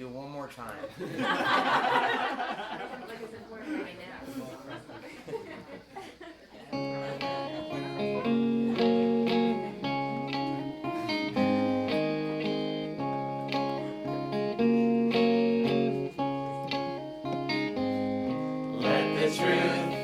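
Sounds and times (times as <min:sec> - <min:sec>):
acoustic guitar strumming and plucking: 0:06.8 - 0:20.0.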